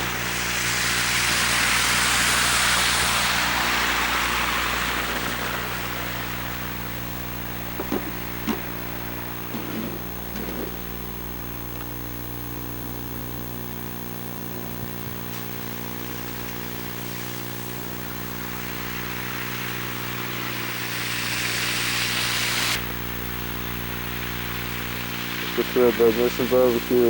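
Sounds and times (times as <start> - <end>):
rushing noise: 0.0 - 11.2, 14.9 - 27.0
steady electrical buzz: 0.0 - 27.0.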